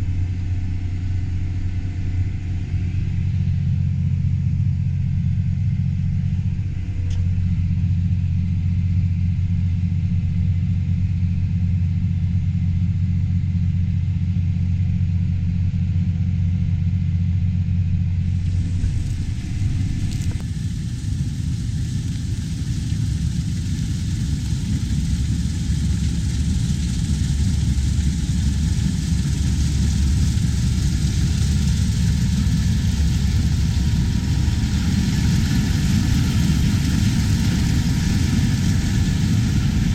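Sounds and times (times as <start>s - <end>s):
heavy machinery engine running: 18.2s - 39.9s.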